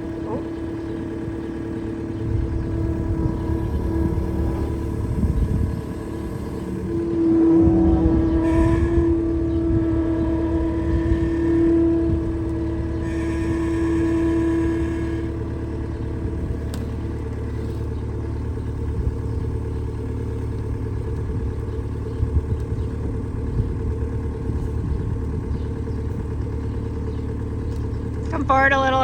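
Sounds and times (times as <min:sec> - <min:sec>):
high steady whine: 0:00.0 - 0:15.4
farm machine engine running: 0:00.0 - 0:29.0.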